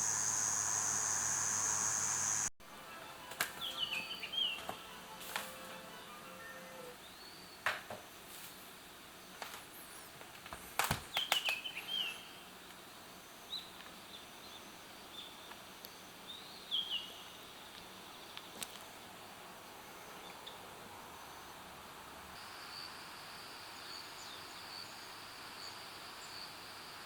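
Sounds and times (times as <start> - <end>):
birds chirping: 0.0 - 2.5.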